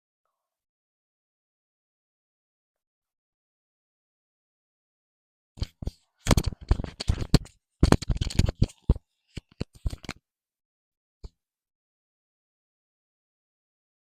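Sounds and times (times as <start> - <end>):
rustling and scraping: 5.6 - 10.2.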